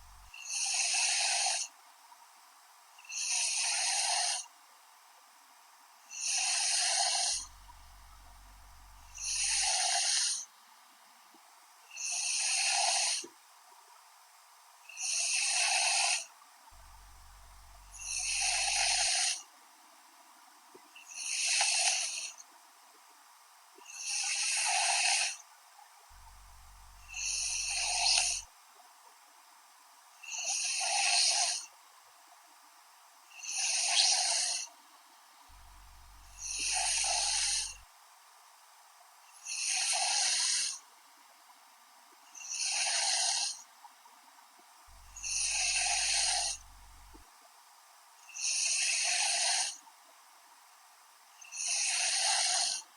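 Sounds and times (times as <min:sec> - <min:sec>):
woman snoring: 0:06.2 - 0:10.4, 0:12.1 - 0:13.2, 0:17.0 - 0:19.4, 0:26.8 - 0:28.4, 0:35.6 - 0:37.8, 0:45.0 - 0:47.2, 0:51.5 - 0:52.8.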